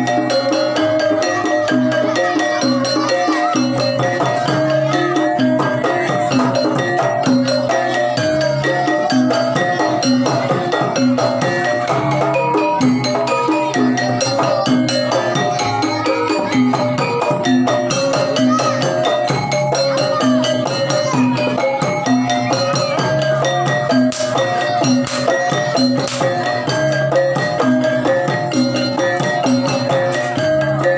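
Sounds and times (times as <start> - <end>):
drumming: 0.0 - 30.9
metallophone and gong-chime notes: 0.0 - 30.9.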